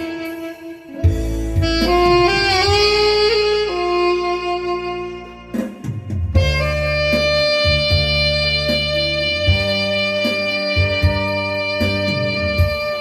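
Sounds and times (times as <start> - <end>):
electronic backing track with beat: 0.0 - 13.0
saxophone long note: 0.0 - 13.0.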